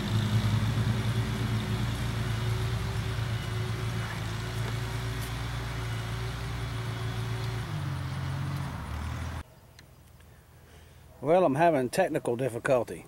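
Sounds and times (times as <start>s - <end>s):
tractor engine running: 0.0s - 9.4s.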